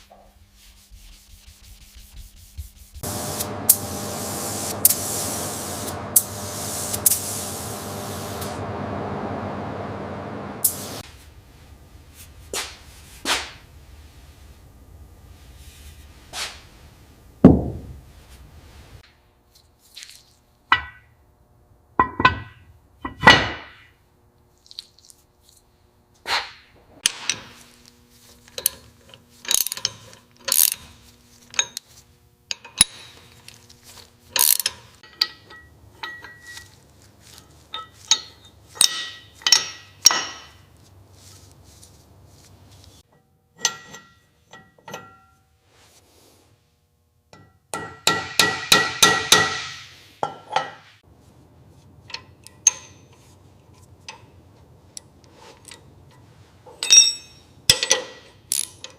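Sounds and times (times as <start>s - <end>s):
hand tools and metal parts clinking: 27.0s - 41.5s, 42.4s - 45.6s, 52.0s - 58.9s.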